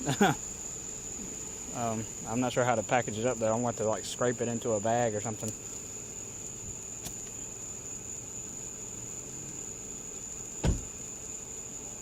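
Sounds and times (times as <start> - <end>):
crickets chirring: 0.0 - 12.0
sharp knock: 10.6 - 10.9.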